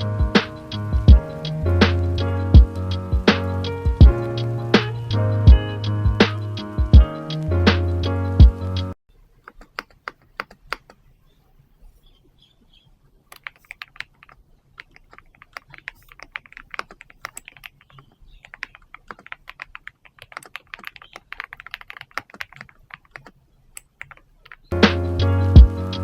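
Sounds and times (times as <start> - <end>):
music with a beat: 0.0 - 9.0, 24.7 - 26.0
mechanical keyboard typing: 13.3 - 24.8.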